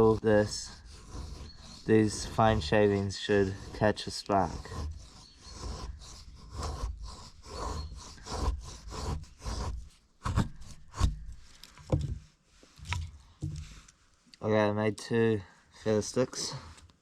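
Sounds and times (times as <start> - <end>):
knife scraping wooden stick: 0.0 - 12.0.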